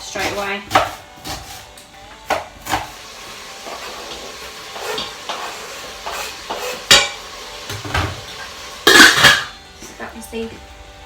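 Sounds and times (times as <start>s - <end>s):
food sizzling under lid: 2.3s - 9.6s.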